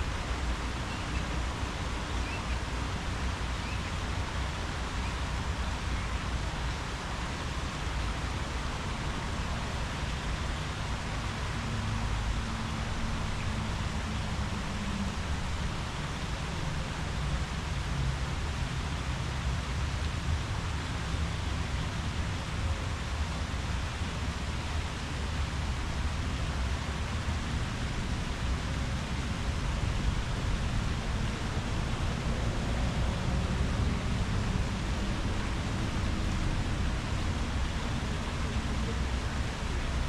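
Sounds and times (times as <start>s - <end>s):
leaves rustling in wind: 0.0s - 40.0s.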